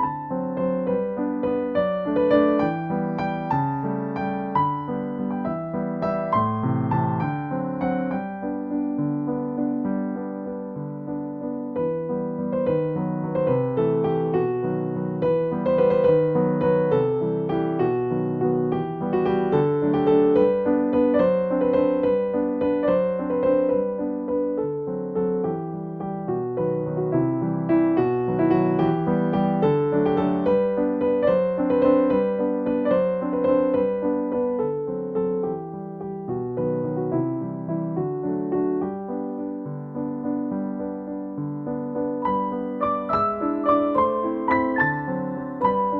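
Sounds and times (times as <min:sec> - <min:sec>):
gentle piano melody: 0:00.0 - 0:45.9.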